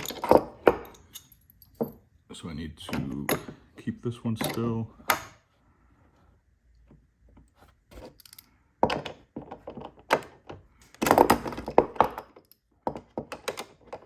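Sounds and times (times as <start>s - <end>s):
tools and nuts knocking: 0.0s - 2.1s, 2.8s - 5.4s, 7.9s - 14.0s.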